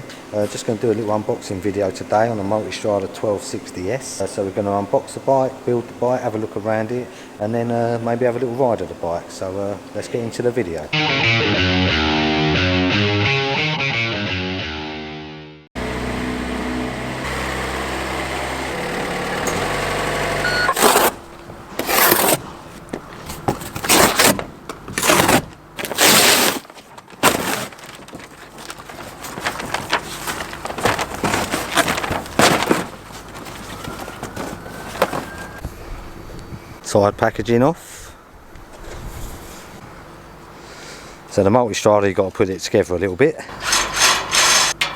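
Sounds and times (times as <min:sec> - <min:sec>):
steady hum shifting pitch: 0:11.0 - 0:19.4
packaging tearing and scraping: 0:20.7 - 0:21.2, 0:21.8 - 0:22.5, 0:23.2 - 0:35.6.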